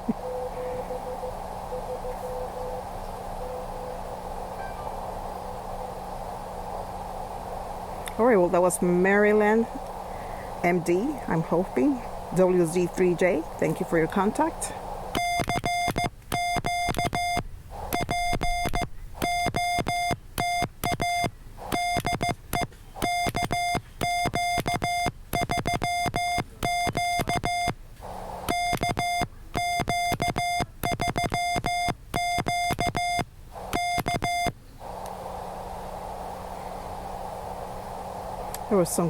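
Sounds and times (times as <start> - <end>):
radio band hiss: 0.0 - 15.3, 17.7 - 19.4, 28.0 - 28.7, 33.5 - 39.0
morse code beeps: 10.7 - 27.8, 28.4 - 34.6.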